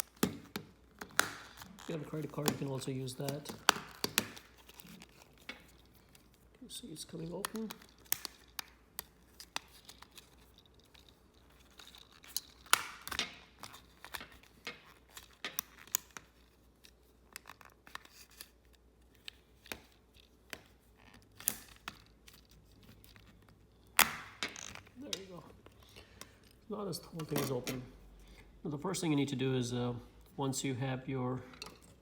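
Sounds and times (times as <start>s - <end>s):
plastic snap clips cracking: 0.0s - 6.2s, 7.2s - 10.4s, 11.8s - 16.3s.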